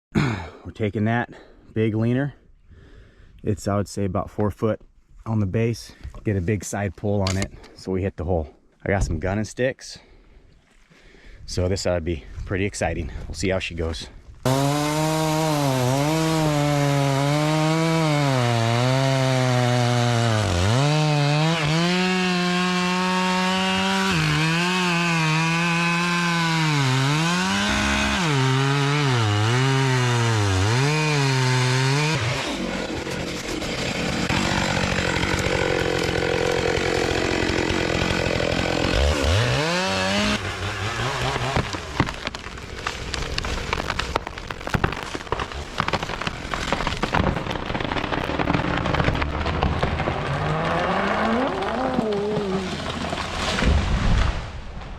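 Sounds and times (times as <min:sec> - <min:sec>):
chainsaw cutting tree: 0:14.4 - 0:54.0
wood cracking: 0:14.4 - 0:54.9
rushing crackling noise: 0:41.8 - 0:54.9.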